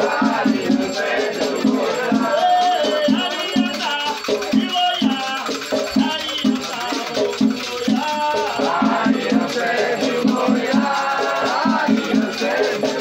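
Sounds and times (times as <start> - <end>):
drum beat: 0.0 - 13.0
rattles shaken: 0.0 - 13.0
voices singing a chant: 0.0 - 13.0.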